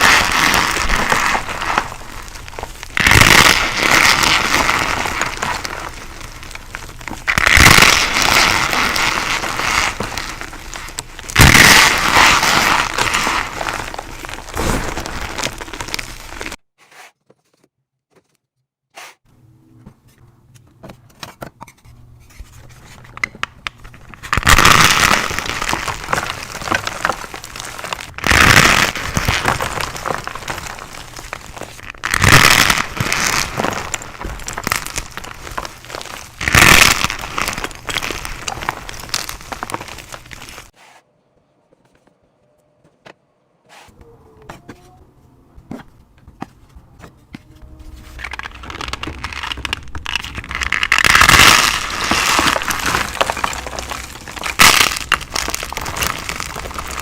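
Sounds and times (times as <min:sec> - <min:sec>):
chalk snapping and crumbling: 0:00.0 - 0:16.6, 0:22.3 - 0:40.8, 0:47.9 - 0:57.0.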